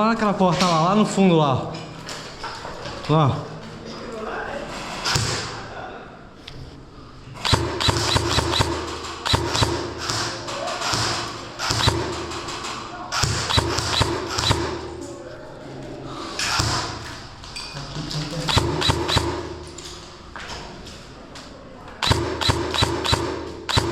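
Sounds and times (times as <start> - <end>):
airsoft gun shots: 7.4 - 14.9, 16.4 - 17.0, 18.5 - 19.6, 22.0 - 23.9.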